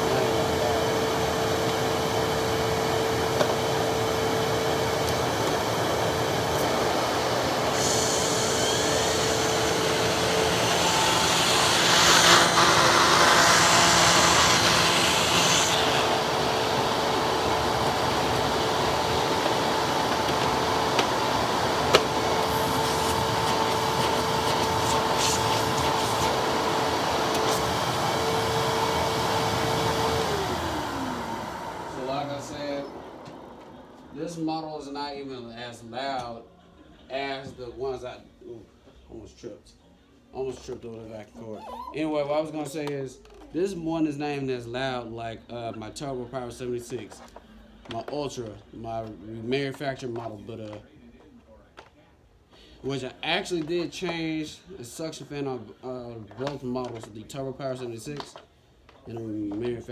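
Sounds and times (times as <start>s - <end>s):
vacuum motor spinning down: 0.0s - 34.7s
upright vacuum cleaner running: 0.0s - 35.1s.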